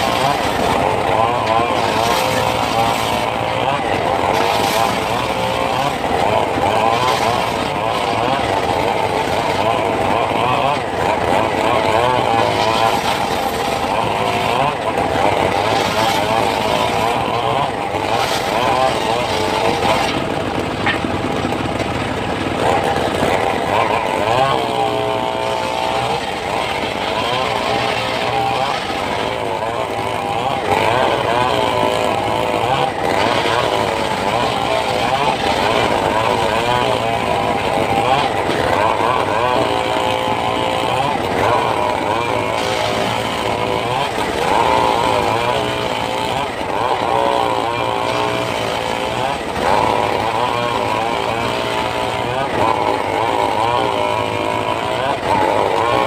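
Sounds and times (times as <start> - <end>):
circular saw cutting wood: 0.0 - 56.0.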